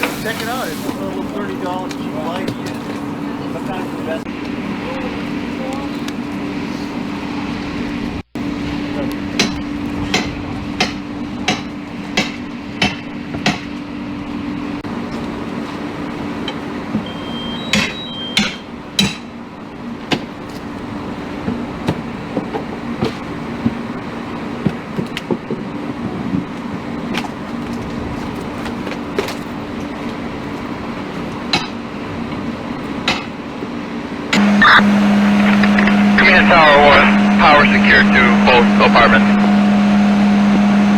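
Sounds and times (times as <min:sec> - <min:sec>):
low hum of fire engine: 0:00.0 - 0:40.9.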